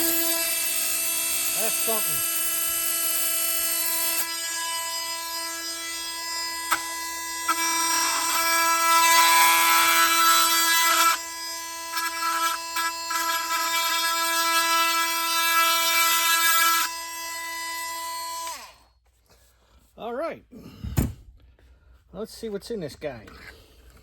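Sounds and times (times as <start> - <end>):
blade cutting through plastic: 0.0 - 16.9
oscillating multi-tool buzzing: 0.0 - 18.8.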